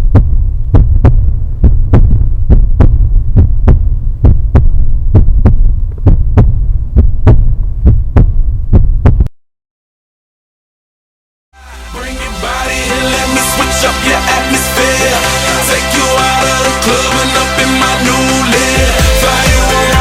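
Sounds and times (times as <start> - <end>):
heartbeat thumps: 0.0 - 9.3
low steady hum: 0.0 - 9.3.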